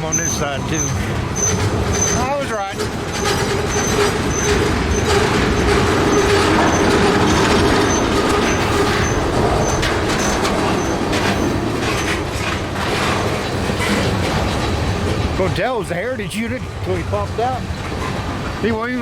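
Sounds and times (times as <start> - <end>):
freight train wheels rumbling on rail: 0.0 - 19.0
short high squeak: 0.1 - 2.4, 3.1 - 11.6.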